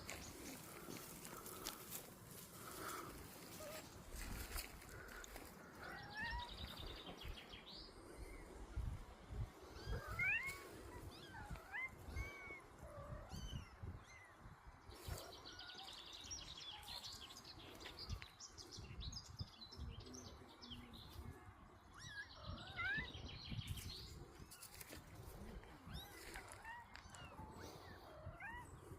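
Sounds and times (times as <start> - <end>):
kittens mewing: 4.9 - 6.8, 9.7 - 14.2.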